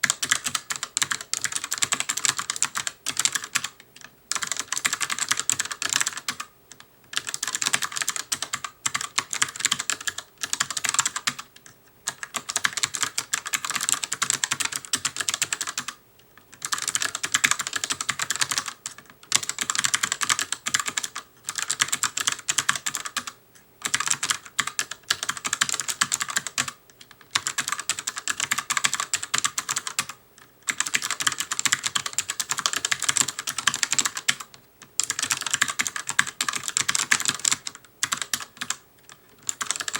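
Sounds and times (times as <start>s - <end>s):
clicky mechanical keyboard typing: 0.0s - 39.9s.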